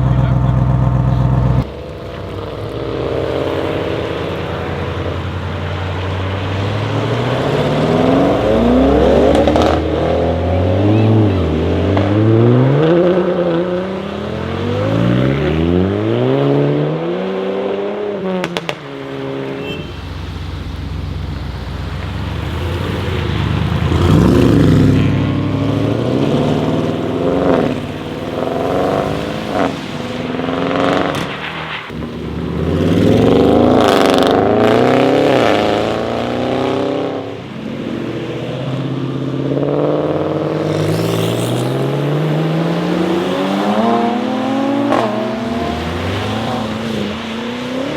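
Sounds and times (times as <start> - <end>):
exhaust pops and crackles: 0.0 - 4.6, 30.8 - 34.3
car engine revving: 0.0 - 47.9.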